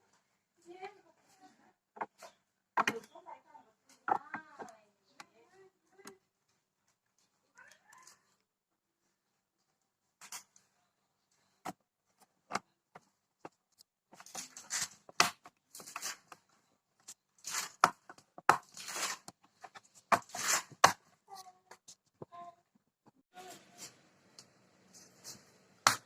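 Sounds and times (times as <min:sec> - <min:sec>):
rustling and scraping: 0:09.0 - 0:22.2, 0:24.8 - 0:25.6.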